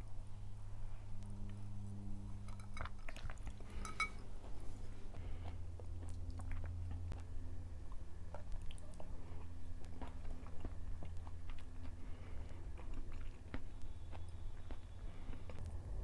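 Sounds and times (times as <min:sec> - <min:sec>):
steady low hum: 0:00.0 - 0:12.8
utensil clinking against dish: 0:02.4 - 0:04.2
close chewing of food: 0:04.9 - 0:15.8.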